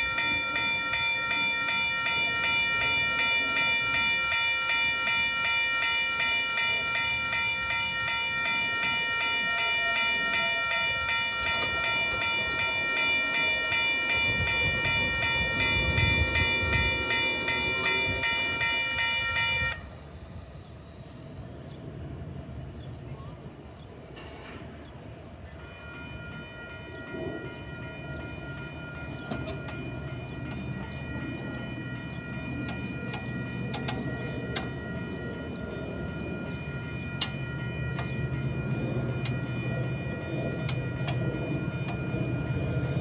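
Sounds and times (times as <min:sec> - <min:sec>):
crossing warning bells ringing: 0:00.0 - 0:43.0
train rumbling past: 0:11.0 - 0:43.0.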